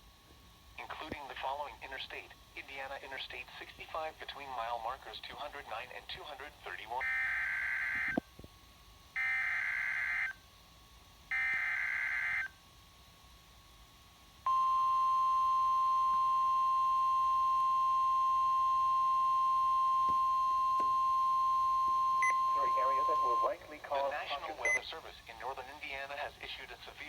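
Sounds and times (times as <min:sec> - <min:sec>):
steady warning alarm tone: 0:07.0 - 0:08.2, 0:09.2 - 0:10.4, 0:11.3 - 0:12.6, 0:14.5 - 0:23.6.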